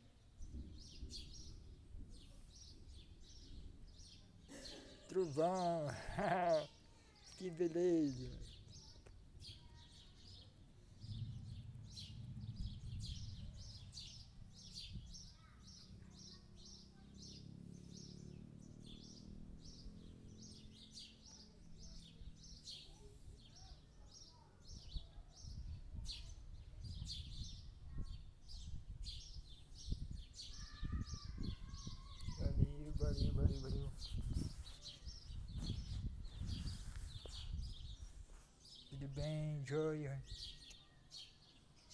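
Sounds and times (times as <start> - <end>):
distant thunder rumbling: 10.9 - 14.4.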